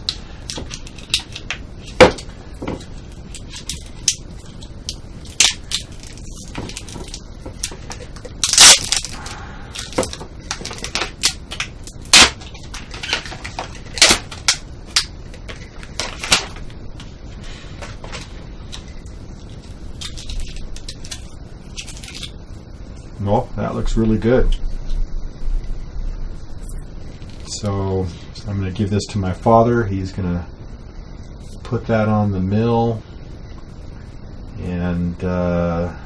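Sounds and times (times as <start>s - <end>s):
mould cracking and snapping: 0.0s - 16.7s, 18.0s - 22.4s.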